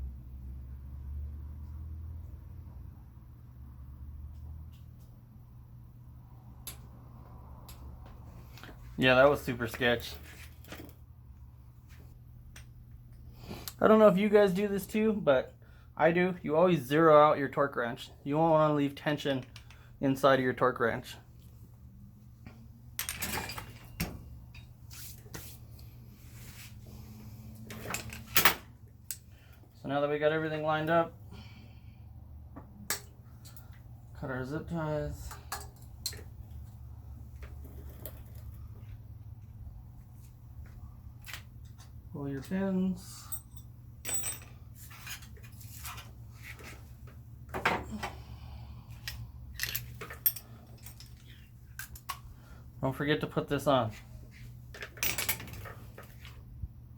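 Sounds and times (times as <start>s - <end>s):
low steady hum: 0.0s - 56.9s
metal tools clattering: 23.0s - 24.8s, 43.2s - 46.1s, 49.1s - 52.2s, 54.7s - 56.3s
metallic clinks and rattles: 43.2s - 46.0s, 49.0s - 52.2s, 54.7s - 56.2s.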